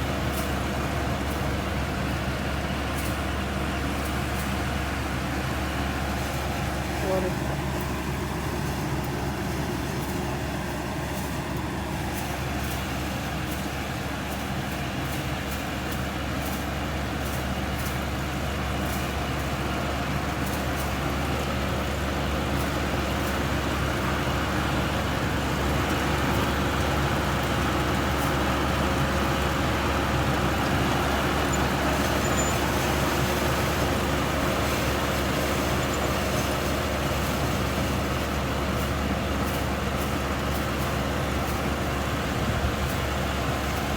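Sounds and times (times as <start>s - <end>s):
combine harvester engine drone: 0.0s - 43.9s.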